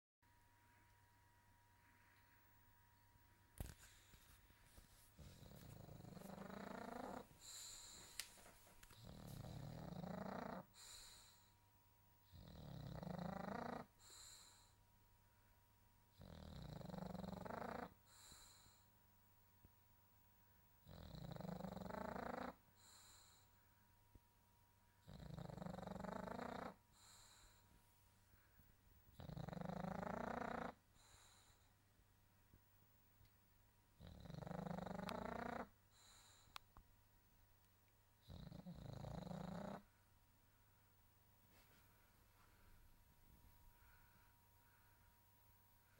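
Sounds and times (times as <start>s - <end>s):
pet snoring: 5.2s - 8.2s, 8.8s - 11.5s, 12.2s - 14.8s, 16.1s - 18.9s, 20.8s - 23.5s, 25.0s - 27.6s, 29.1s - 31.7s, 34.0s - 36.6s, 38.2s - 39.9s.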